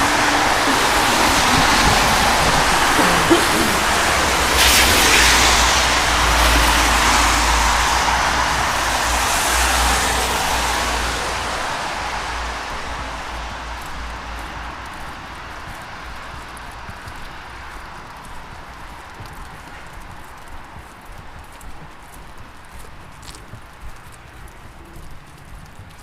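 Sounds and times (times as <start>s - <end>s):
car engines rumbling: 0.0s - 18.2s
tyres hissing on wet road: 0.0s - 20.3s.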